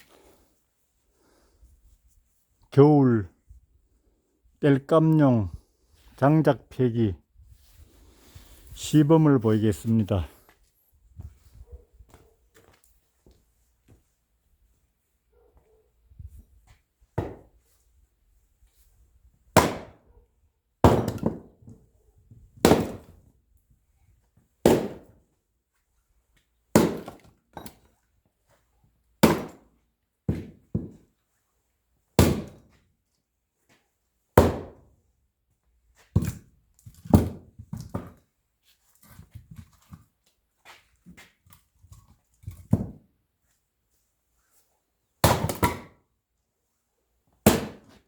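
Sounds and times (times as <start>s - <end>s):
axe splitting logs: 19.6s - 20.0s, 20.8s - 21.6s, 22.6s - 23.2s, 24.6s - 25.1s, 26.7s - 27.9s, 29.2s - 29.7s, 32.2s - 32.7s, 34.4s - 34.8s, 36.1s - 38.2s, 45.2s - 46.0s, 47.4s - 48.0s.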